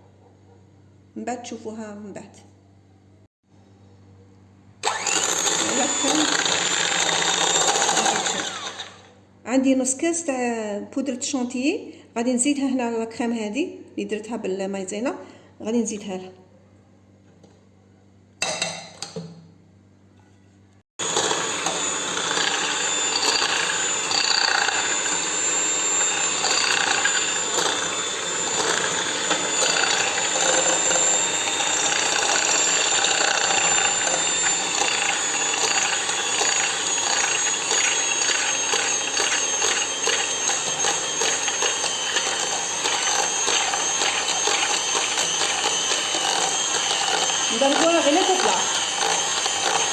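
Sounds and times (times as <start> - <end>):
electric mixer whining: 4.8 - 9.1, 21.0 - 49.9.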